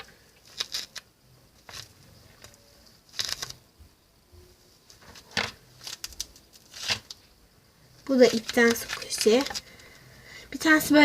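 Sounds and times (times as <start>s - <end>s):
plastic film crinkling: 0.0s - 3.6s, 4.9s - 7.3s, 8.0s - 10.0s.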